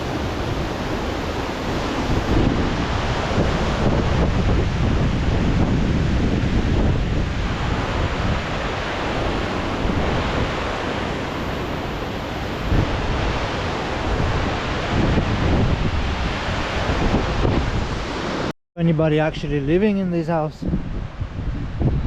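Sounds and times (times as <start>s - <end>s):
wind buffeting microphone: 0.0s - 18.4s, 20.6s - 22.0s.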